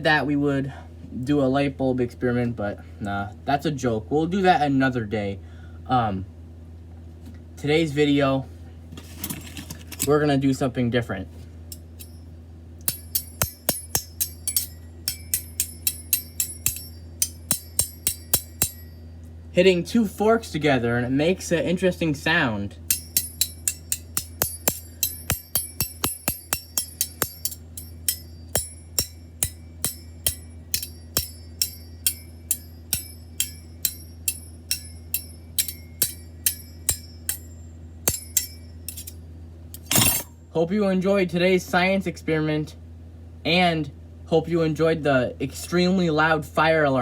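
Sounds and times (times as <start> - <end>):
metal forks clinking together: 12.9 - 19.0, 22.9 - 39.2, 39.8 - 40.3.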